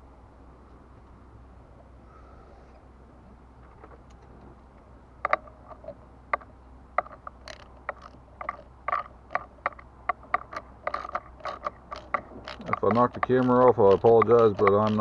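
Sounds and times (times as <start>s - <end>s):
small plastic parts clicking: 5.2s - 15.0s.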